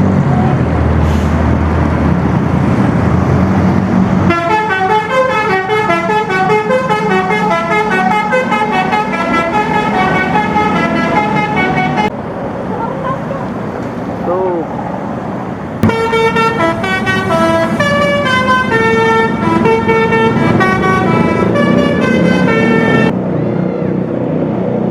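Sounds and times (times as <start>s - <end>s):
bus engine rumble: 0.0s - 24.9s
horn playing fast melody: 4.3s - 12.1s, 15.8s - 23.1s.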